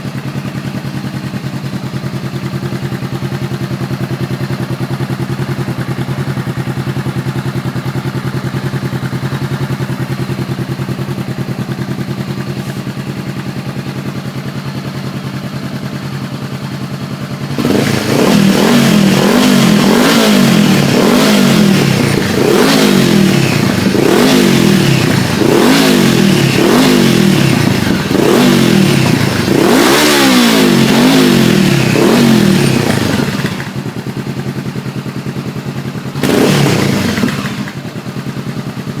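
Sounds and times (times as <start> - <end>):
motorcycle engine idling: 0.0 - 39.0
motorcycle engine revving: 0.0 - 39.0.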